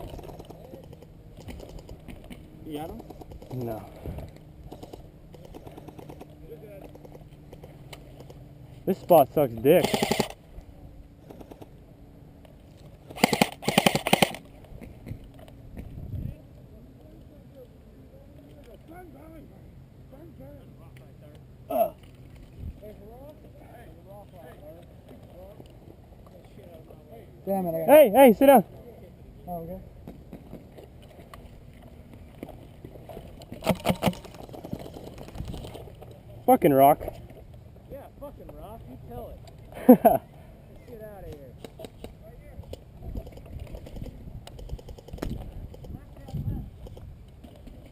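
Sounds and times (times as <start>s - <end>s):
camera handling noise: 9.7s - 10.4s, 13.1s - 15.5s
airsoft gun firing bursts: 9.8s - 10.4s, 13.1s - 14.4s.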